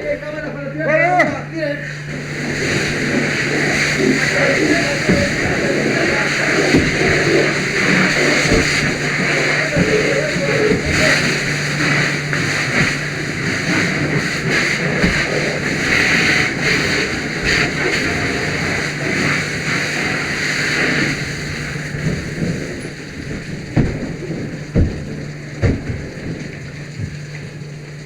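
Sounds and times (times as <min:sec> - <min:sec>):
low steady hum: 0:00.0 - 0:28.0
rain-like rushing noise: 0:01.8 - 0:28.0
sharp knocks: 0:22.0 - 0:27.2.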